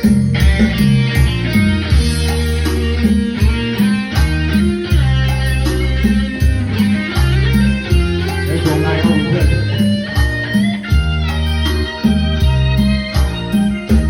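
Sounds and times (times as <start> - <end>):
bass guitar: 0.0 - 14.0
electric guitar melody: 0.0 - 14.0
steady drum beat: 0.0 - 14.0.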